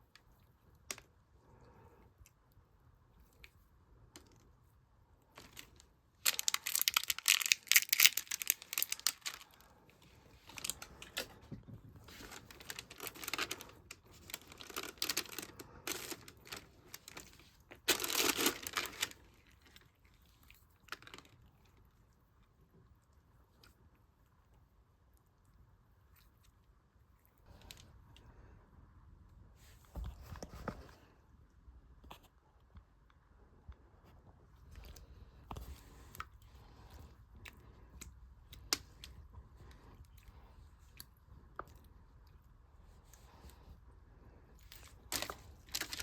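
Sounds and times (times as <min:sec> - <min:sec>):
slime with beads crackling: 0:05.3 - 0:09.7, 0:12.0 - 0:21.4, 0:44.7 - 0:46.0.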